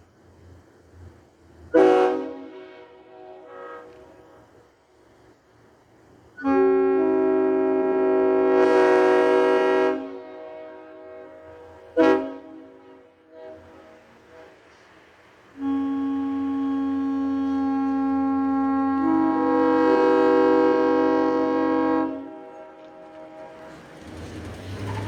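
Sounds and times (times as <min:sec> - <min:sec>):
train horn blasts: 0:01.7 - 0:04.6, 0:06.4 - 0:14.7, 0:15.5 - 0:25.0.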